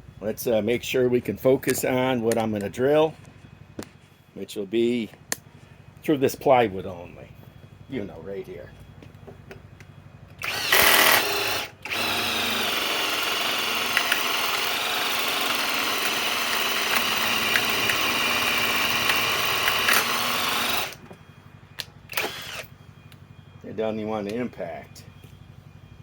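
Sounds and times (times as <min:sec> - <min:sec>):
impact wrench drilling into plywood: 0:10.4 - 0:21.0, 0:22.1 - 0:22.7.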